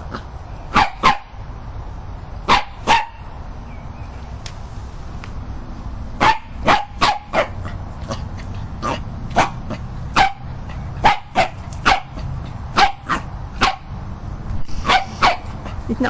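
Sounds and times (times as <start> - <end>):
dog barking: 0.7 - 1.4, 2.4 - 3.3, 6.2 - 7.7, 8.8 - 13.9, 14.8 - 15.8.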